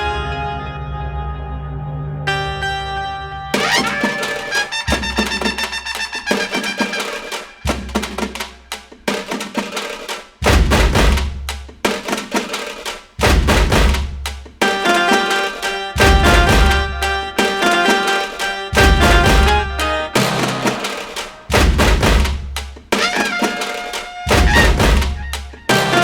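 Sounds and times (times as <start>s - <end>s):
instrumental music with drums: 3.6s - 26.0s
heavy bass hits: 10.4s - 11.5s, 13.2s - 14.3s, 16.0s - 17.3s, 18.8s - 20.7s, 21.5s - 22.6s, 24.3s - 25.4s.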